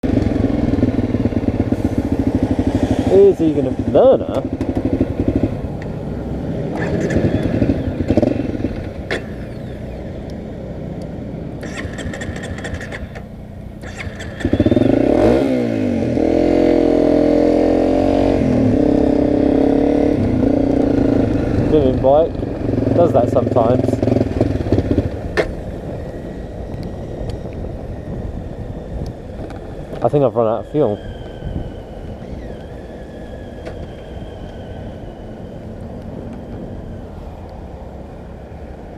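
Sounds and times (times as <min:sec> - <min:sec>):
steady rushing noise: 0:00.0 - 0:09.8
motorcycle engine running: 0:00.0 - 0:37.0.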